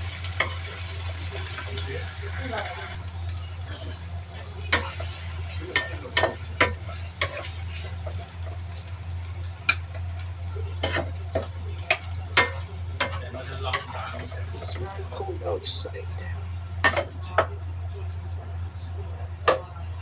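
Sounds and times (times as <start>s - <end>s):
faint sizzle: 0.0s - 20.0s
steady low hum: 0.0s - 20.0s
spatula scraping a pan: 4.7s - 15.2s.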